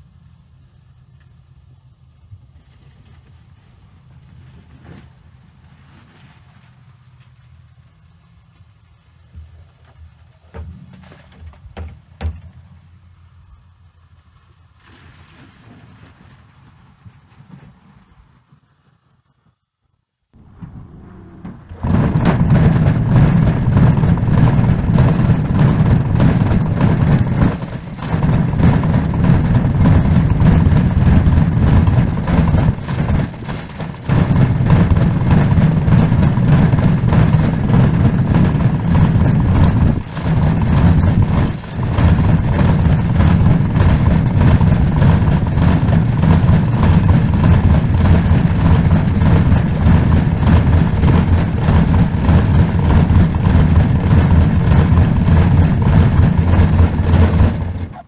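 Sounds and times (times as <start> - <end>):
engine running loudly: 20.4 - 58.0.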